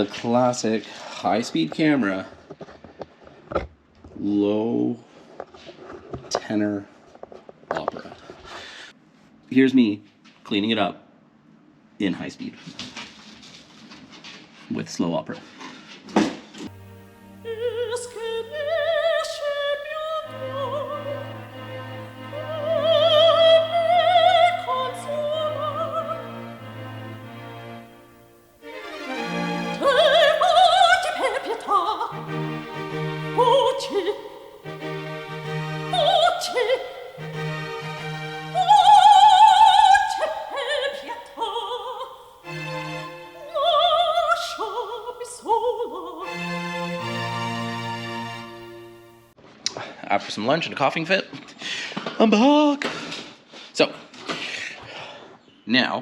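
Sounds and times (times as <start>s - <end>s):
orchestral accompaniment: 16.7s - 49.4s
opera singing with vibrato: 16.9s - 27.5s, 28.6s - 47.2s
operatic voice singing: 17.4s - 26.4s.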